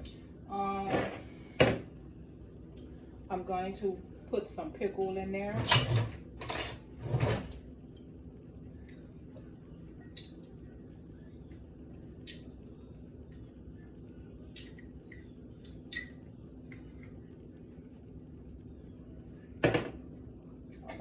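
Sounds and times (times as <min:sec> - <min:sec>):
steady low hum: 0:00.0 - 0:21.0
utensils clinking against dishes: 0:05.6 - 0:07.4, 0:14.6 - 0:17.1.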